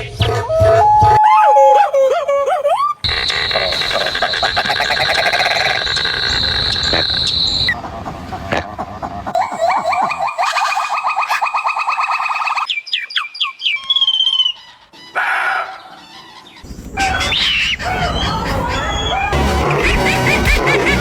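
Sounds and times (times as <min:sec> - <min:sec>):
fast trilling animal call: 0:02.7 - 0:07.8, 0:09.4 - 0:16.0
warbling bird-like whistle: 0:02.8 - 0:07.8, 0:09.4 - 0:14.6.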